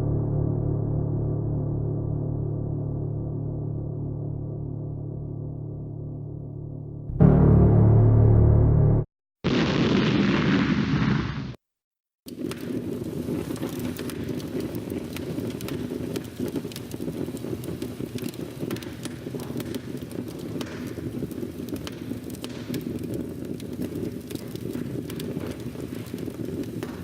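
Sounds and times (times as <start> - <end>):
large fire rumbling: 9.5 - 11.6, 12.3 - 27.0
fire crackling and popping: 12.3 - 27.0.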